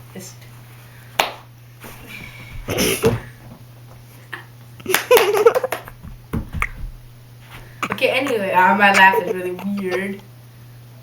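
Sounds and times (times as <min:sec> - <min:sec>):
boy laughing: 0:04.8 - 0:06.0, 0:07.8 - 0:10.2.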